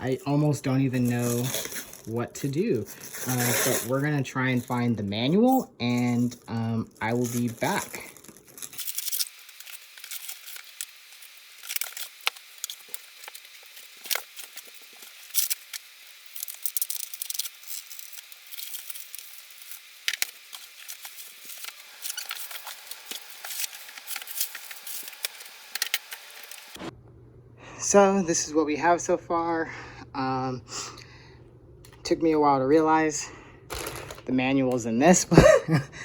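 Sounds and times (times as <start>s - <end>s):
packaging rustling and crinkling: 6.2s - 26.8s.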